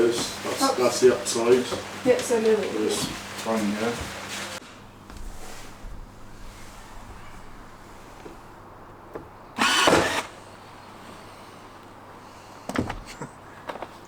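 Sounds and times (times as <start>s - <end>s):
power drill running: 9.6s - 10.4s.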